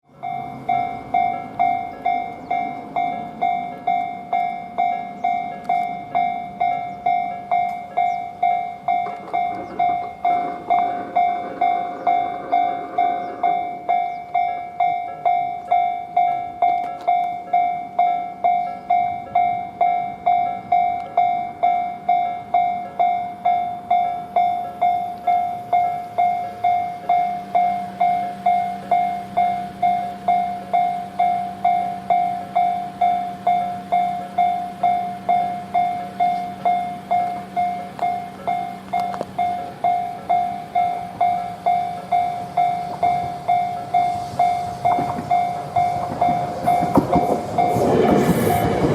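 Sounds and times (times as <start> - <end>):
level crossing warning bell: 0.0 - 48.9
train rumbling past: 0.1 - 48.9.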